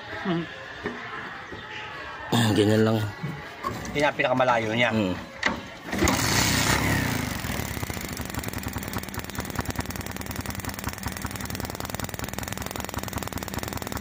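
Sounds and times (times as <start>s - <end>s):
motorcycle engine idling: 6.1s - 14.0s.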